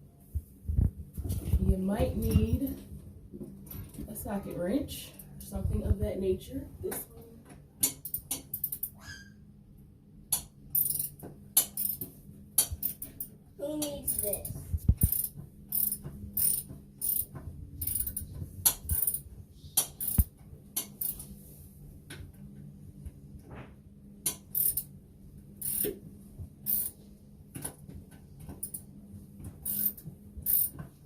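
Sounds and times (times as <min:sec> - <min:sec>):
ratchet wrench clicking: 0:07.8 - 0:08.9, 0:10.3 - 0:12.0, 0:15.0 - 0:19.2, 0:19.8 - 0:21.3, 0:24.3 - 0:24.9, 0:25.6 - 0:26.0, 0:26.6 - 0:27.0, 0:29.6 - 0:30.8.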